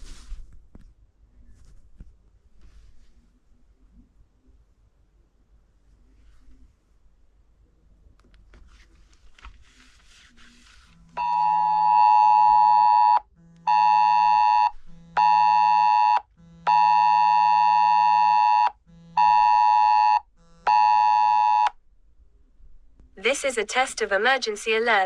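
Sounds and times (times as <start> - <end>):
pulsing phone alarm tone: 11.2 - 21.7.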